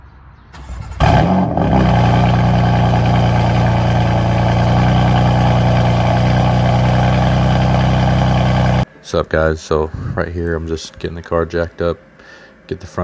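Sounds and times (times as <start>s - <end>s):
car engine starting and idling: 0.6s - 8.9s.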